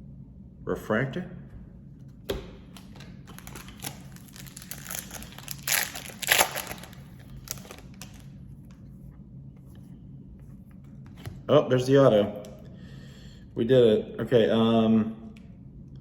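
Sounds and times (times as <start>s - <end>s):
foil wrapper crinkling: 2.8s - 8.4s.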